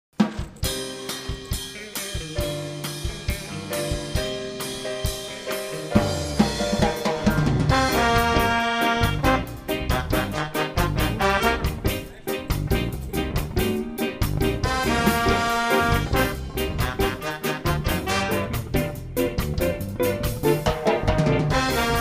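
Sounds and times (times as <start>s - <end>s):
drum kit snare and bass drum: 0.1s - 22.0s
bass line: 1.3s - 22.0s
brass section holding notes: 7.7s - 12.1s, 14.6s - 18.8s, 21.5s - 22.0s.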